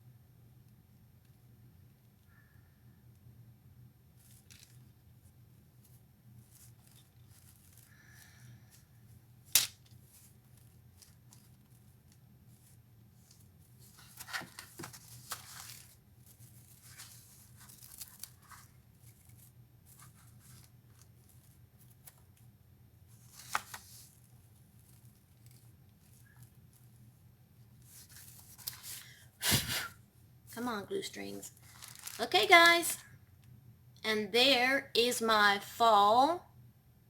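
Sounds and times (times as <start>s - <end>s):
craft materials crinkling and rustling: 4.2s - 22.5s, 23.1s - 29.3s, 31.3s - 32.8s.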